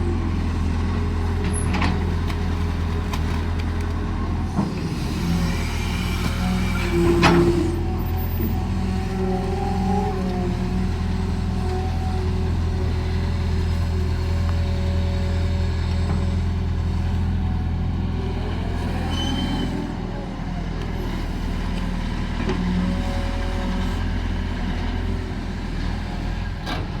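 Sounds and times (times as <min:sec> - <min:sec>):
excavator diesel engine running: 0:00.0 - 0:27.0
hydraulic whine: 0:04.4 - 0:13.0, 0:18.1 - 0:21.0
high squeak: 0:19.1 - 0:19.8.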